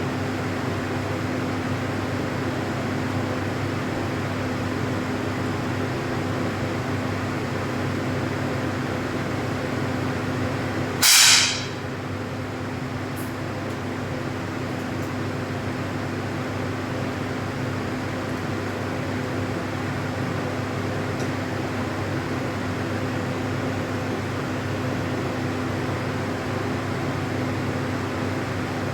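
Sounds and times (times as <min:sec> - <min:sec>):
steady background hum: 0:08.6 - 0:13.7
air pistol shot: 0:11.0 - 0:11.8.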